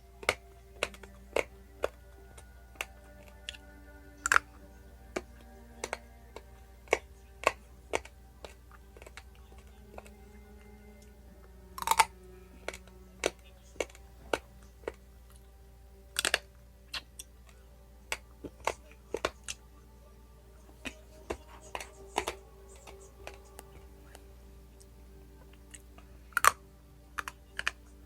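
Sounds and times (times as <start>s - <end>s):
dry spaghetti crunching between teeth: 0.0s - 11.1s, 11.7s - 15.5s, 16.1s - 19.6s, 24.8s - 28.0s.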